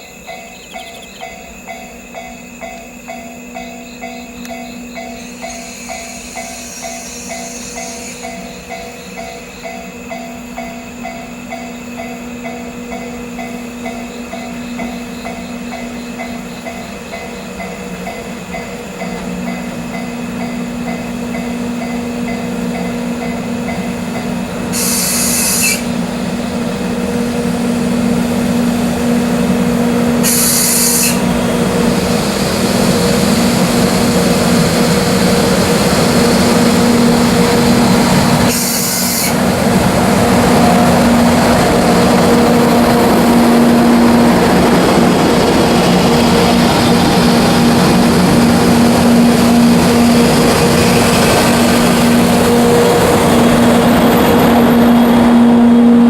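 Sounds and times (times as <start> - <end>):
electric locomotive hum: 0.0 - 56.0
short high hisses: 24.7 - 25.9, 30.2 - 31.2
wide rumble: 39.4 - 56.0.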